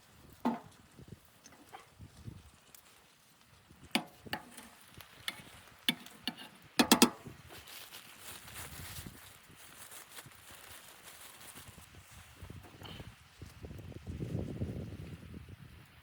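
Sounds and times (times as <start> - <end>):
objects knocking and clattering: 0.4 - 0.7, 5.3 - 7.2.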